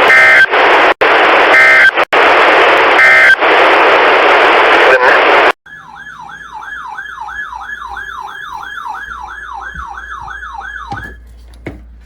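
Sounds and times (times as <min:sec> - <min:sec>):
electronic siren yelp: 0:05.7 - 0:11.2.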